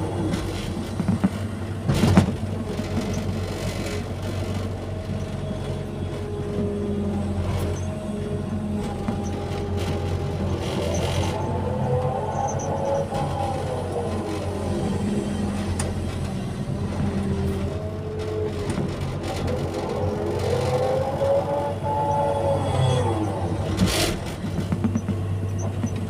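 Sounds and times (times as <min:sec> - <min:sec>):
excavator diesel engine running: 0:00.0 - 0:26.0
higher whine shifting pitch: 0:19.6 - 0:26.0.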